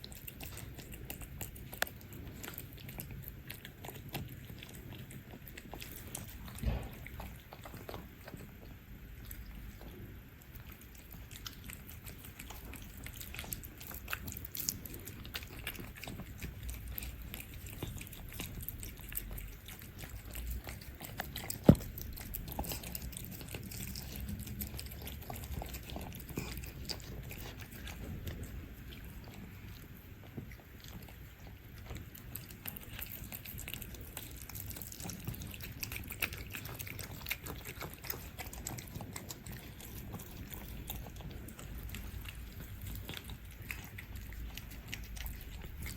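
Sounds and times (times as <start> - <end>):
cats chewing food: 0.0 - 45.9.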